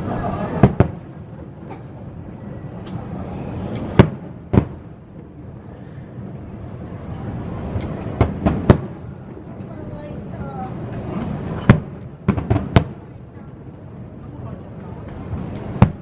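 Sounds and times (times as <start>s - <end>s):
fireworks bursting with sharp bangs: 0.0s - 16.0s
faint firework pops: 3.7s - 5.3s, 7.8s - 9.0s, 11.2s - 13.1s, 15.0s - 16.0s.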